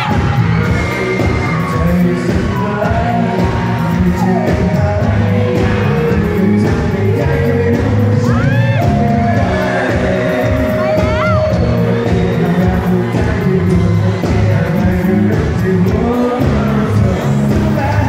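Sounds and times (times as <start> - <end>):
fans shouting and whooping: 0.0 - 18.0
live pop band playing: 0.0 - 18.0
man singing: 0.0 - 18.0
high cries from audience: 8.2 - 9.0, 10.6 - 11.8.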